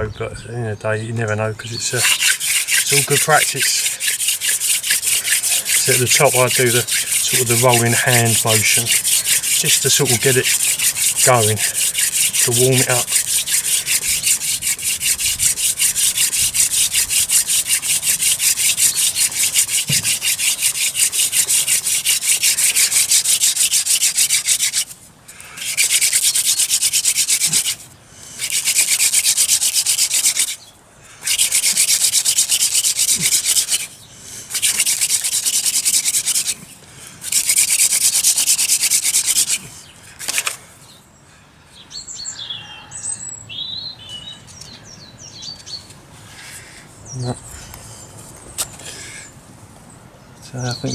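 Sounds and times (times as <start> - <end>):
wooden spindle rubbing on wood: 1.8 - 25.0, 25.6 - 27.8, 28.4 - 30.6, 31.2 - 39.7
bird chirps: 41.7 - 45.9.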